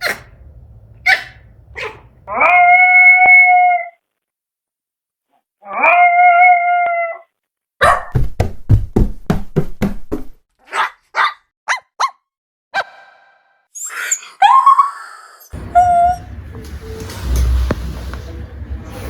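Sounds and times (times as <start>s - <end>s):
dog barking: 0.0s - 0.3s, 1.0s - 2.5s, 7.8s - 8.2s, 10.6s - 12.2s
dog yipping: 0.0s - 0.3s, 1.0s - 4.0s, 10.6s - 12.2s, 13.8s - 16.3s
dog howling: 1.2s - 4.0s, 5.7s - 7.2s, 15.5s - 16.3s.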